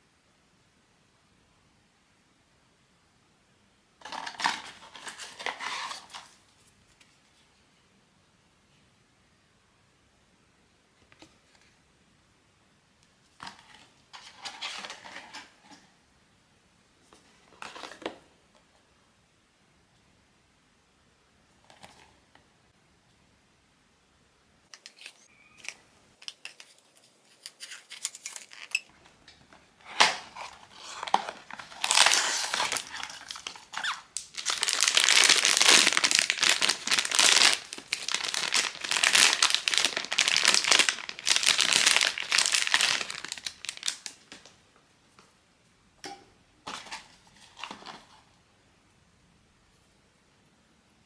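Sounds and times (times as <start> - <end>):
plastic packaging crinkling: 24.8 - 44.6.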